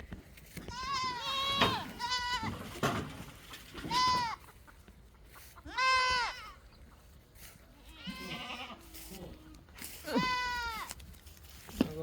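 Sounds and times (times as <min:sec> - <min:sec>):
goats bleating: 0:00.6 - 0:02.8, 0:03.8 - 0:04.6, 0:05.4 - 0:06.6, 0:07.7 - 0:11.0.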